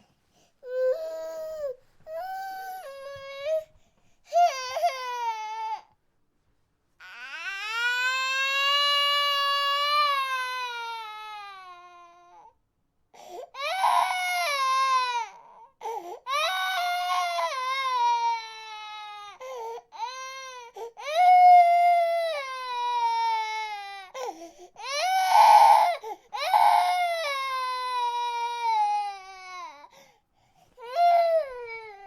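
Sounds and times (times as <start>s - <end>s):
baby crying: 13.6s - 29.9s.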